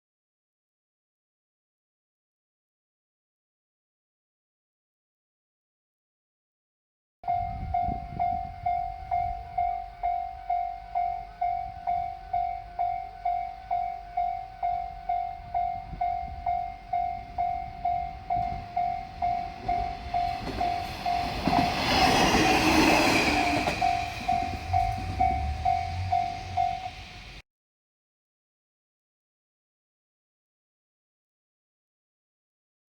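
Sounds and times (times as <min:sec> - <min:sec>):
diesel railcar passing: 0:07.3 - 0:27.4
level-crossing warning bell dinging: 0:07.3 - 0:27.4.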